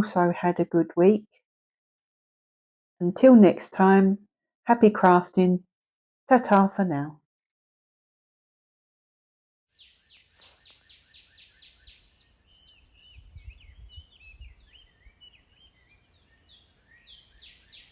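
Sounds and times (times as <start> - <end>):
faint birdsong: 9.7 - 17.9.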